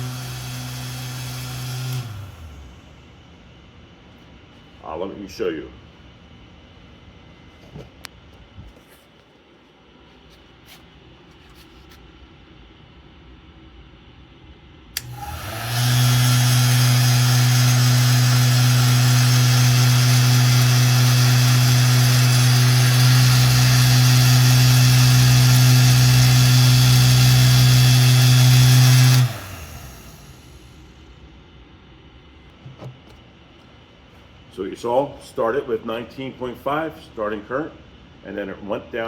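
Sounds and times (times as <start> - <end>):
fan heater running: 0.0 - 39.0
heater switch click: 15.0 - 15.9.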